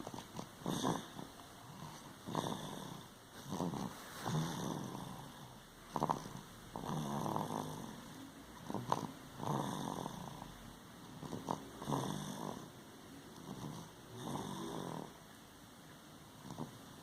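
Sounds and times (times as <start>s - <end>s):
baby snoring: 0.0s - 12.7s, 13.4s - 15.2s, 16.4s - 16.8s.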